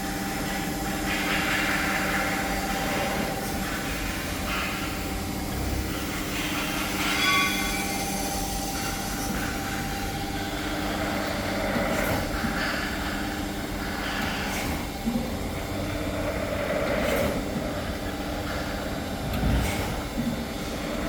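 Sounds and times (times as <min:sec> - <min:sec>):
grinder machine hum: 0:00.0 - 0:21.0.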